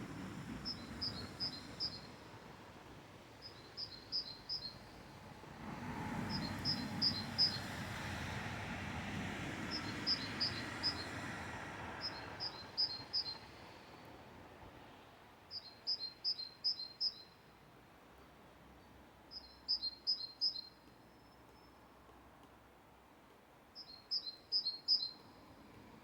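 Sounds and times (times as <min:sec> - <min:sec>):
songbird singing: 0:00.6 - 0:02.1, 0:03.4 - 0:05.1, 0:06.3 - 0:07.8, 0:09.7 - 0:11.2, 0:12.0 - 0:13.6, 0:15.5 - 0:17.5, 0:19.3 - 0:21.8, 0:23.8 - 0:25.4
car passing: 0:04.7 - 0:13.9.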